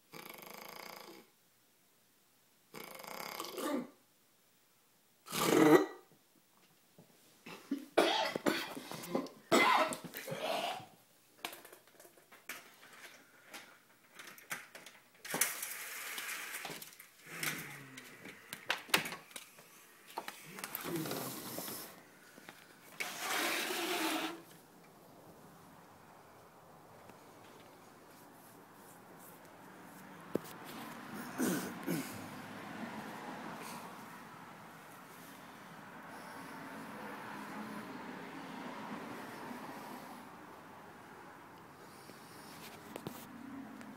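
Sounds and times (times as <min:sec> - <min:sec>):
person snoring: 0:00.1 - 0:01.3, 0:02.7 - 0:03.8, 0:17.2 - 0:18.7, 0:20.8 - 0:22.0.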